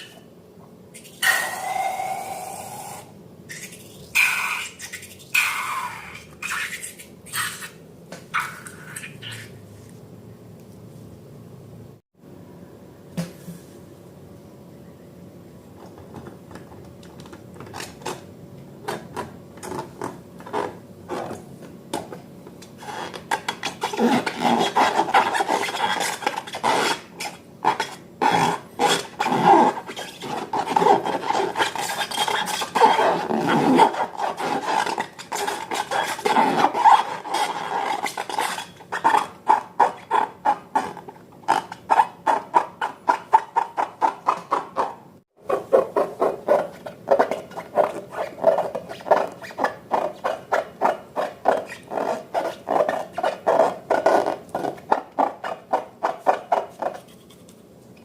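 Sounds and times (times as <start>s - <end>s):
slime scraping and stirring: 22.7s - 44.6s.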